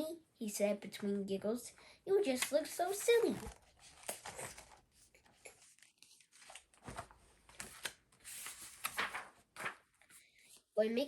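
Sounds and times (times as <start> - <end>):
book page rustling: 2.3 - 10.7.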